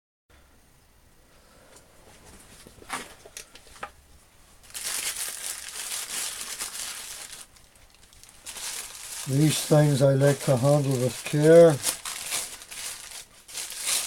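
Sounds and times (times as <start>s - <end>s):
packing wrap crinkling: 4.6s - 14.0s.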